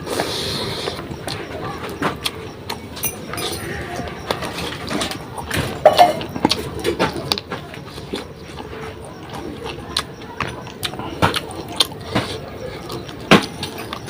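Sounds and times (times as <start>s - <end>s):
chewing and lip smacking: 0.0s - 14.0s.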